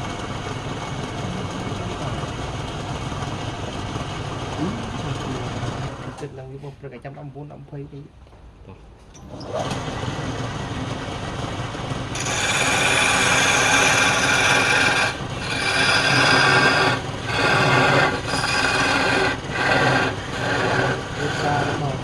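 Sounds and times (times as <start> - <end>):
faint motor hum: 0.0 - 22.0
wood being sanded on lathe: 12.1 - 22.0.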